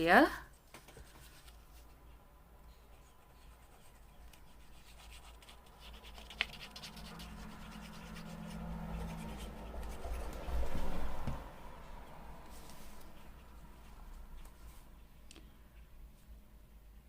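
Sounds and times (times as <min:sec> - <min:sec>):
paper rustling and scraping: 0:04.3 - 0:11.2.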